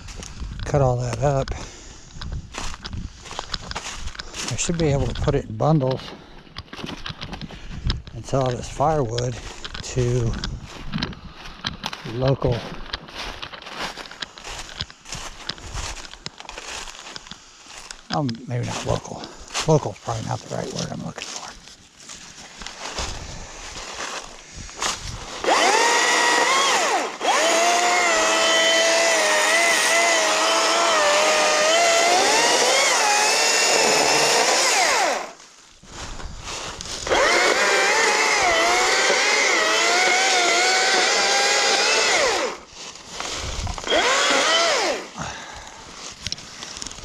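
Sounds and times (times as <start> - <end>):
chainsaw cutting logs: 24.8 - 35.5, 36.9 - 45.8.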